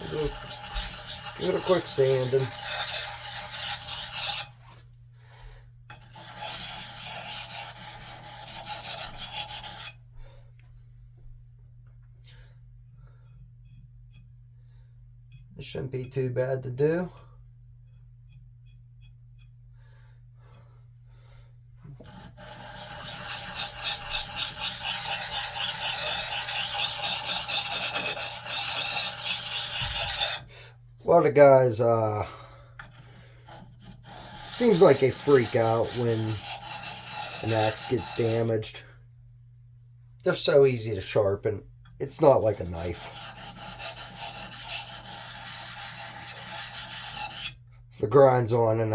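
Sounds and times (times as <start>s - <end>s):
sandpaper rubbing on steel: 0.0s - 4.5s, 6.2s - 9.9s, 22.1s - 30.5s, 33.9s - 38.5s, 42.3s - 47.5s.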